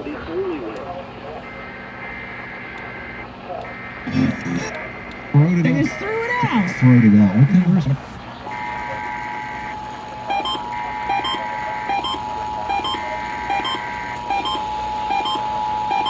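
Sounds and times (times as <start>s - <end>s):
screechy data bursts: 1.4s - 16.0s
two-tone attention signal: 4.1s - 7.4s, 10.3s - 16.0s.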